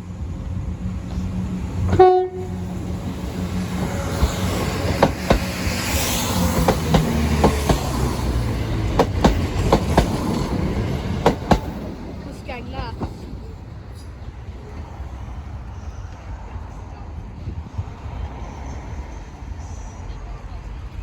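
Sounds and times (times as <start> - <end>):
train wheels clacking over rail joints: 1.1 - 14.5
train horn blast: 1.8 - 2.8.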